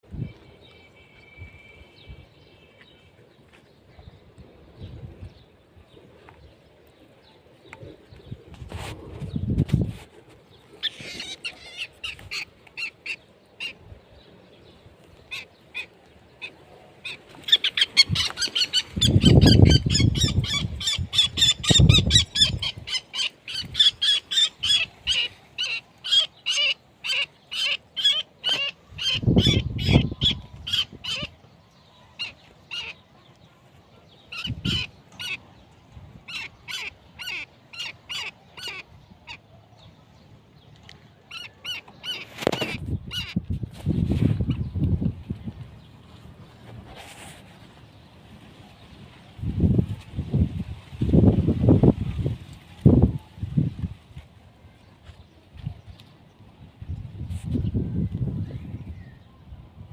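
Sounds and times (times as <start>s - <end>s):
birds calling: 10.5s - 49.8s.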